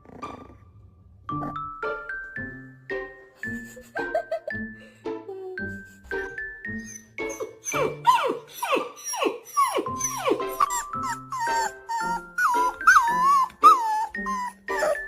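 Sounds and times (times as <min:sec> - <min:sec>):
background music: 0:00.0 - 0:15.0
dog whining and yelping: 0:06.7 - 0:15.0.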